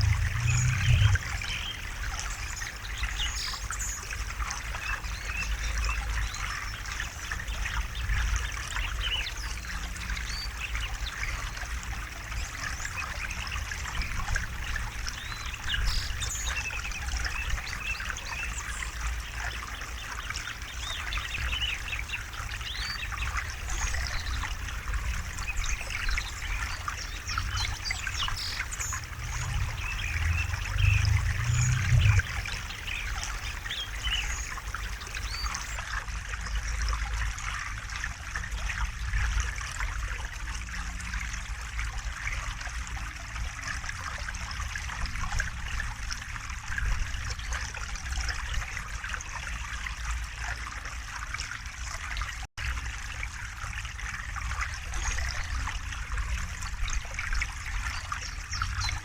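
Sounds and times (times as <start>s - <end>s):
low rumble: 0.0s - 2.4s, 24.0s - 35.8s
river water flowing: 0.0s - 59.0s
small birds chirping: 12.8s - 35.8s.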